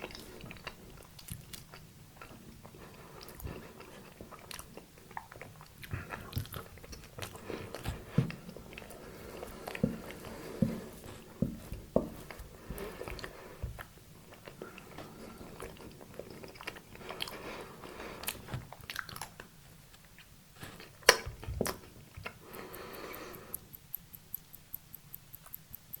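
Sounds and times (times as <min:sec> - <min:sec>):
chewing and biting soft food: 0:00.0 - 0:23.4
faint high ticks: 0:22.5 - 0:26.0.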